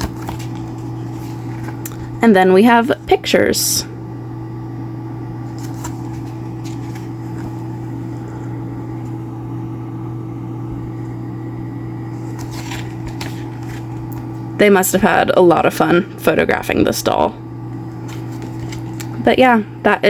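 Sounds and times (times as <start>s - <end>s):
booklet rustling and tapping: 0.0s - 2.1s, 5.5s - 7.9s, 12.2s - 14.3s, 17.9s - 19.2s
low electrical hum: 0.0s - 20.0s.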